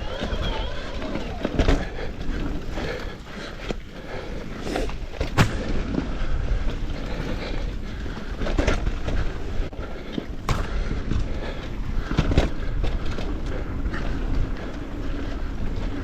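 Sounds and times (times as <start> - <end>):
tyres rumbling on dirt: 0.0 - 16.0
bike knocks and rattles: 4.7 - 6.3, 10.1 - 14.8.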